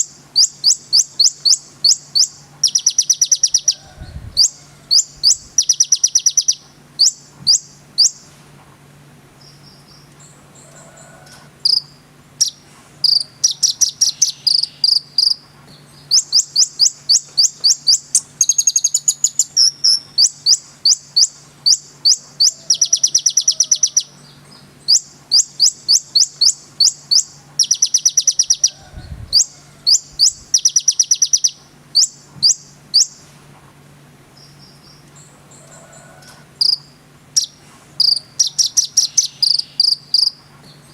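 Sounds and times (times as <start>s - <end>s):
bird singing chips and trills: 0.0s - 3.8s, 4.4s - 8.3s, 11.6s - 28.7s, 29.3s - 33.3s, 36.6s - 40.9s
faint hum: 0.0s - 40.9s.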